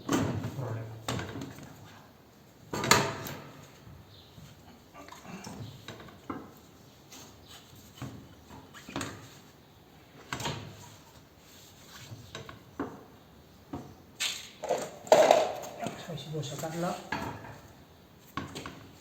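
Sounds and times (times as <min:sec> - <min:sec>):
tools and parts knocking: 0:14.6 - 0:16.0.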